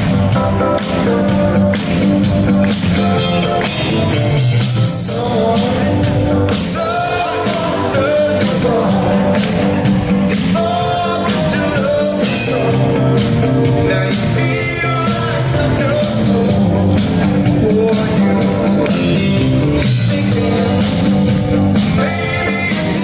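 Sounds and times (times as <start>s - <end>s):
soft rock band playing live: 0.0s - 23.0s
person singing: 4.8s - 23.0s.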